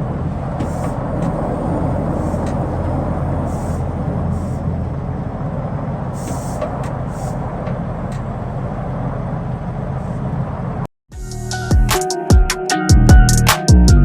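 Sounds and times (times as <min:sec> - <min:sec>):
road noise: 0:00.0 - 0:10.9
truck engine drone: 0:00.0 - 0:10.9
brief air hisses: 0:03.5 - 0:04.7, 0:06.1 - 0:07.5
music: 0:11.1 - 0:14.0.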